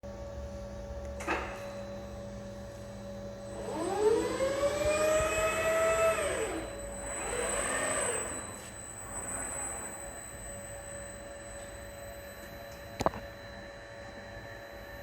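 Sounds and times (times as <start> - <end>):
steady electrical hum: 0.0 - 15.0
robot arm servo whining: 3.5 - 13.2.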